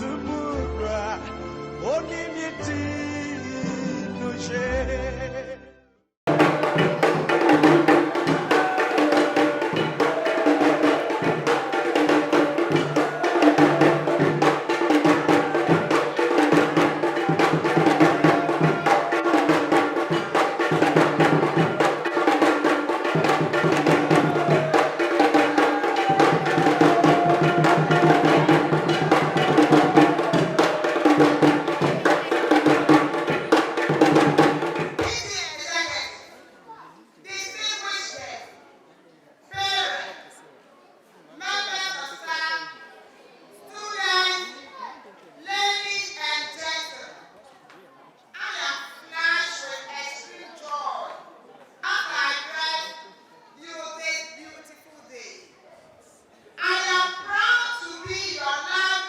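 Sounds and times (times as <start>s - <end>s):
music with busy percussion: 6.3s - 36.1s.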